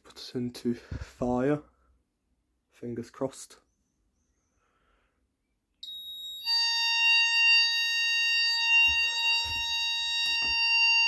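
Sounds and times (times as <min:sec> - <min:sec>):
alarm sounder steady tone: 0:05.8 - 0:11.0.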